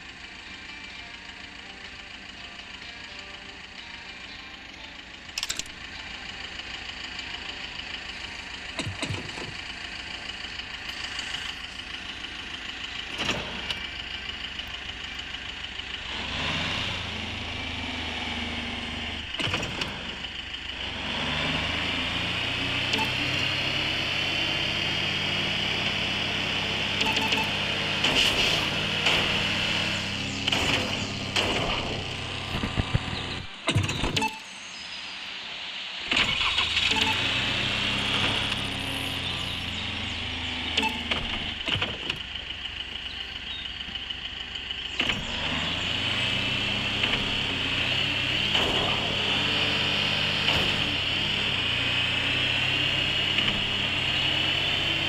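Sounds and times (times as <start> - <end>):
car engine running: 0.0 - 55.0
knocks and rattles from bumps: 8.8 - 9.6.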